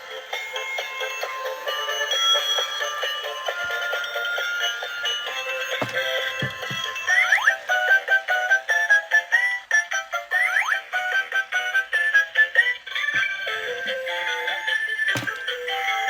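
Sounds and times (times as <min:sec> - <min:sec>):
soft knocks: 0:05.7 - 0:07.2.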